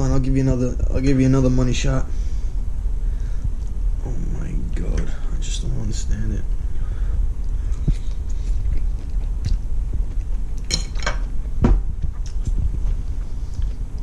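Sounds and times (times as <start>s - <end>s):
steady low hum: 0.0s - 14.0s
person chewing: 7.4s - 14.0s.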